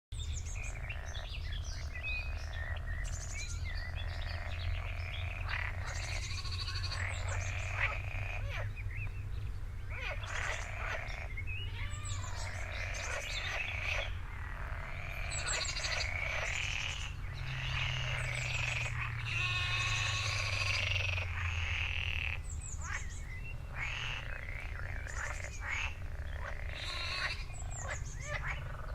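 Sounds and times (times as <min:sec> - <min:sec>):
frogs croaking and trilling: 0:00.2 - 0:28.9
animal calls: 0:09.9 - 0:28.9.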